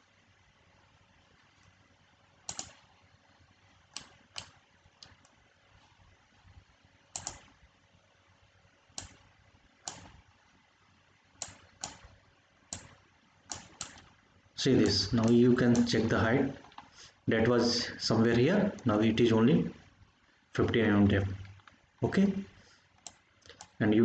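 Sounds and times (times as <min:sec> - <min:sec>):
computer keys clicking: 0:02.5 - 0:03.0, 0:03.9 - 0:05.4, 0:07.1 - 0:07.6, 0:08.9 - 0:10.2, 0:11.4 - 0:14.2, 0:14.8 - 0:16.9, 0:23.0 - 0:23.8.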